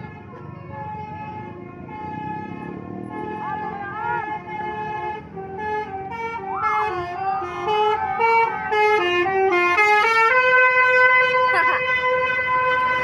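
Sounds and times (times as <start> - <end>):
musical air horn melody: 4.9 - 13.0.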